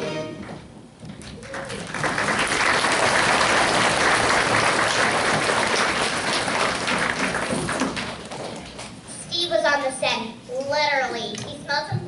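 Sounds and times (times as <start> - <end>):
audience applauding: 1.2 - 8.8.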